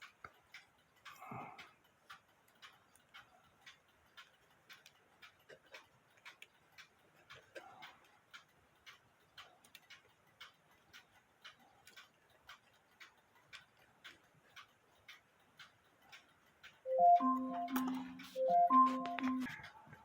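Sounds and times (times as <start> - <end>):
alarm clock ticking: 0.0 - 20.0.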